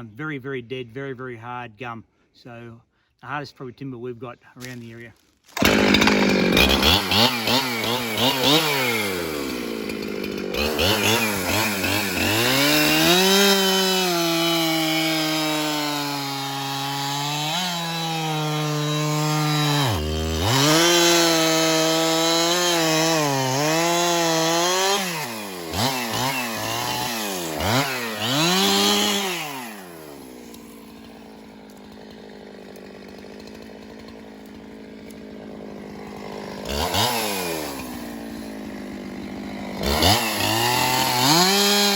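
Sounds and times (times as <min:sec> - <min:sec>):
chainsaw cutting wood: 0:05.4 - 0:41.9.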